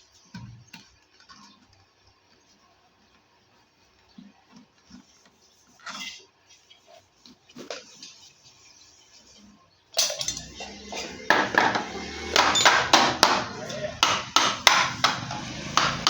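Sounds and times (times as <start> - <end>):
sharp metallic knocks and clinks: 10.0 - 15.5.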